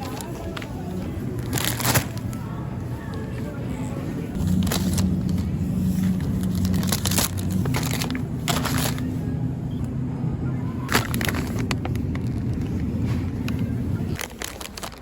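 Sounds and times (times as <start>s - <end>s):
crinkling: 0.0s - 3.3s, 4.3s - 9.3s, 10.9s - 15.0s
car engine humming: 3.5s - 14.2s.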